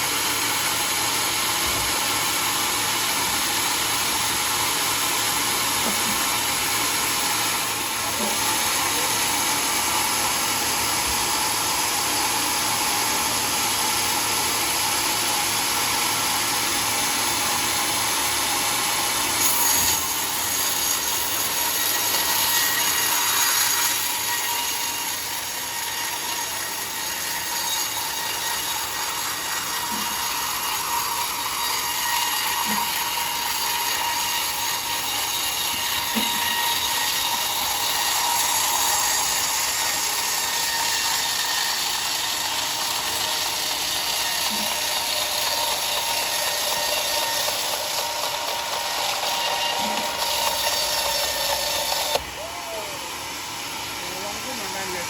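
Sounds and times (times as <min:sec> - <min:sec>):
sawmill blade cutting wood: 0:00.0 - 0:55.0.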